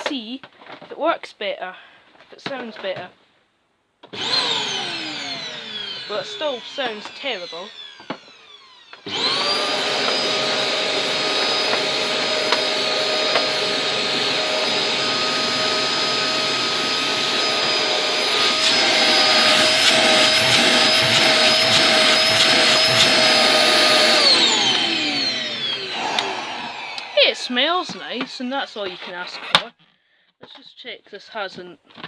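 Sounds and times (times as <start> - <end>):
person talking: 0.0 - 3.2, 6.0 - 7.8, 27.0 - 29.7
vacuum cleaner motor whine: 4.1 - 29.6.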